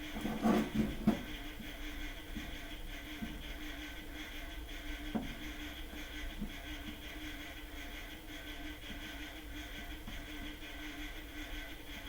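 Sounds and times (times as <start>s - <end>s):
clock motor whirring hum: 0.0s - 12.0s.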